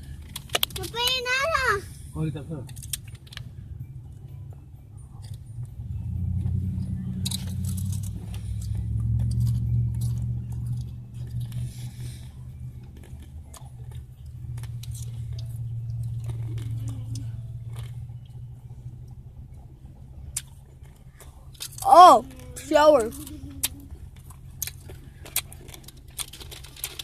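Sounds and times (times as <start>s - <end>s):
low car rumble: 0.0s - 27.0s
candy being bitten and chewed: 7.1s - 18.3s, 20.3s - 27.0s.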